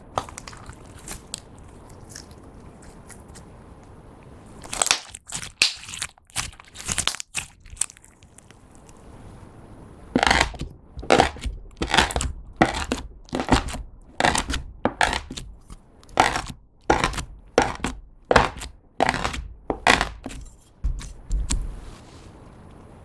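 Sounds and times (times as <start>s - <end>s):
slime squishing and crackling: 0.0s - 2.4s, 4.6s - 8.5s, 10.2s - 21.6s.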